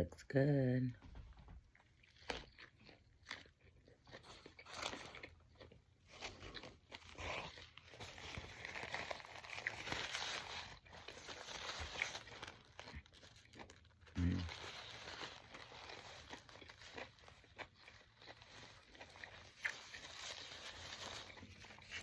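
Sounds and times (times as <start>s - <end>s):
person biting and chewing food: 1.6s - 22.0s
wrapper rustling: 7.1s - 22.0s.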